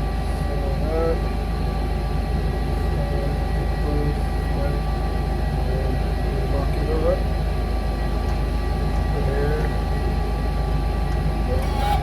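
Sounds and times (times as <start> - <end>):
low machine hum: 0.0 - 12.0
faint whining tones: 7.9 - 12.0.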